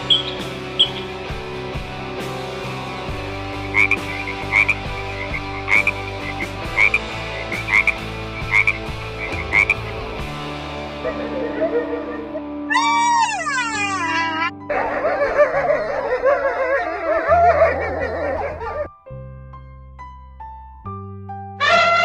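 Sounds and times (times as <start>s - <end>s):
frog croaking: 0.0s - 1.1s, 3.6s - 10.0s
background music: 0.0s - 22.0s.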